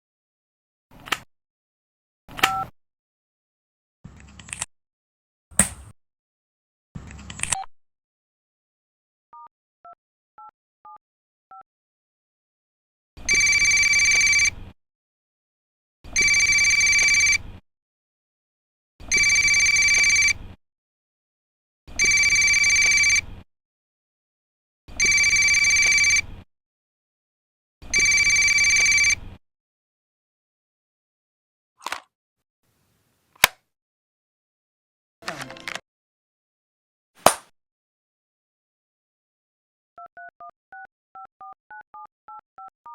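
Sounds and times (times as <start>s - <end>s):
two-tone keypad beeps: 2.4s - 2.7s, 40.2s - 42.9s
electronic phone ringer ringing: 13.3s - 14.6s, 16.2s - 17.4s, 19.1s - 20.4s, 22.0s - 23.2s, 25.0s - 26.2s, 28.0s - 29.2s.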